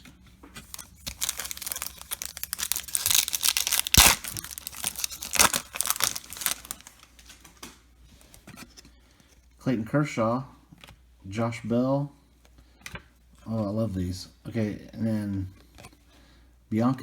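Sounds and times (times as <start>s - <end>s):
wrapper crinkling and tearing: 0.6s - 7.4s.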